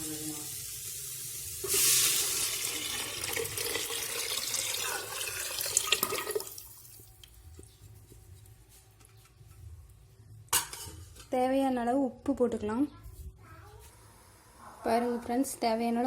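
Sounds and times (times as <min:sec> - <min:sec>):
liquid pouring and splashing: 0:01.6 - 0:07.3.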